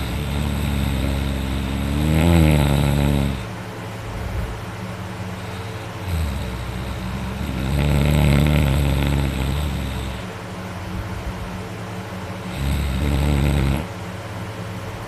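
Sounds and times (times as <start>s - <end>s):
man snoring loudly: 0.0s - 3.5s, 5.4s - 10.4s, 12.4s - 13.9s
quiet breathing: 0.0s - 3.6s, 5.3s - 10.4s.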